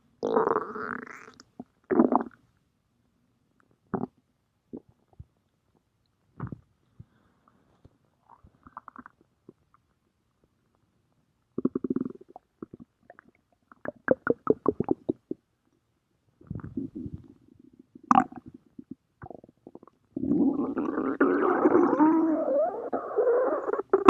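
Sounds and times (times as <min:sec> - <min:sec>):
stomach growling: 0:08.2 - 0:09.8, 0:11.6 - 0:15.3, 0:16.4 - 0:24.0.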